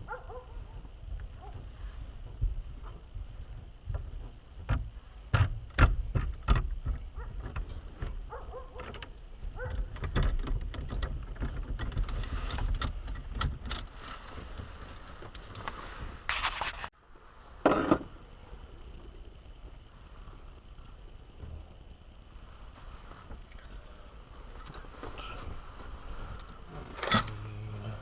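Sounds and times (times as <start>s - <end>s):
hand tools and metal parts clattering: 4.0s - 16.9s, 24.6s - 28.0s.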